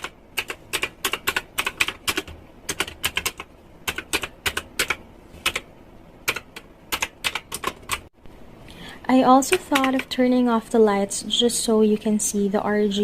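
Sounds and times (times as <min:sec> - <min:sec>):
clicky mechanical keyboard keystrokes: 0:09.7 - 0:10.1.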